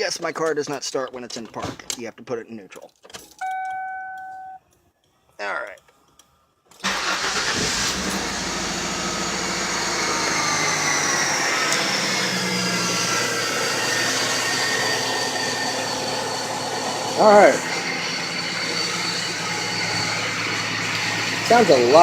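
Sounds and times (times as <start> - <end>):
car engine starting and idling: 6.8 - 22.0
faint engine whine: 6.8 - 22.0.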